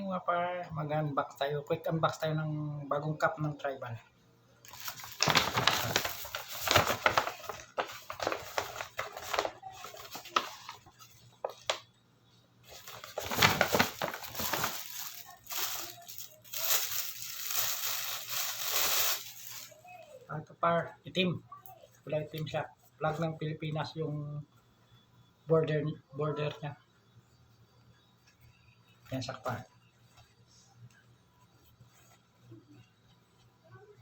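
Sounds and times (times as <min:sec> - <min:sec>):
packaging crinkling and rustling: 0:04.7 - 0:11.9, 0:12.6 - 0:20.0.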